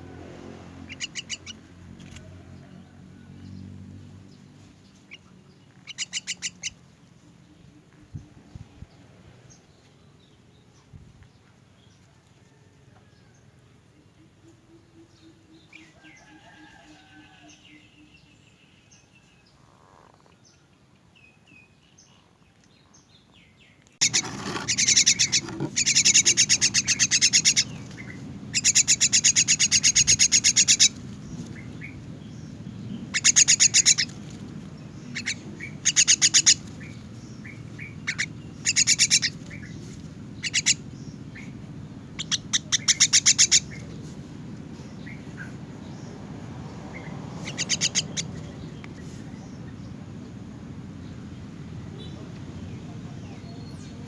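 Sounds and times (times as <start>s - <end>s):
bird chick begging calls: 0.8s - 1.6s, 5.8s - 6.8s, 24.0s - 31.0s, 33.0s - 34.3s, 35.0s - 36.9s, 37.8s - 39.7s, 40.4s - 43.9s, 47.4s - 48.5s.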